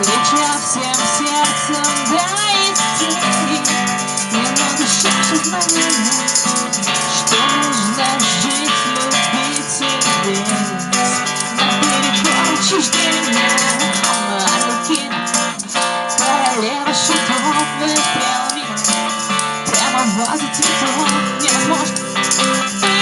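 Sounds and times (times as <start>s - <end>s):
rattle keeping a beat: 0.0s - 23.0s
strummed acoustic guitar: 0.0s - 23.0s
gliding melody line: 2.0s - 18.8s.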